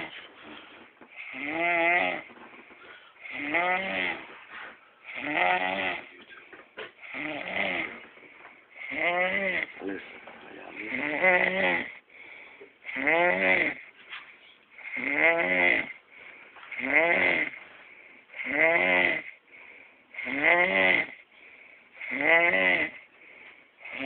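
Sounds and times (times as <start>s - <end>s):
person snoring: 0.0s - 4.4s, 5.1s - 6.2s, 7.0s - 8.2s, 8.8s - 10.0s, 10.6s - 12.0s, 12.8s - 13.8s, 14.8s - 16.0s, 16.7s - 17.6s, 18.3s - 19.4s, 20.2s - 21.2s, 22.0s - 23.1s, 23.8s - 24.0s.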